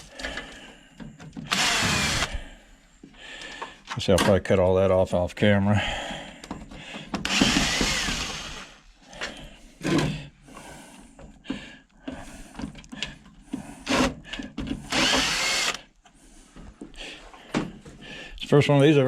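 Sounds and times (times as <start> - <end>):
cordless drill whine: 1.4 - 2.5, 7.2 - 8.9, 14.9 - 15.9.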